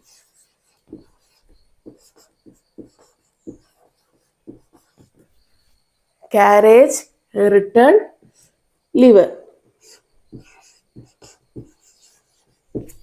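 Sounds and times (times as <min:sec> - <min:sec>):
pen strokes of handwriting: 0:00.0 - 0:05.4, 0:09.8 - 0:13.0.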